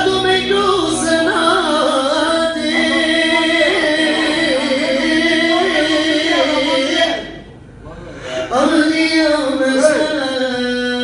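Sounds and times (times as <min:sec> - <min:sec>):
ornamented sung melody: 0:00.0 - 0:07.5
sustained accompanying tones: 0:00.0 - 0:07.8.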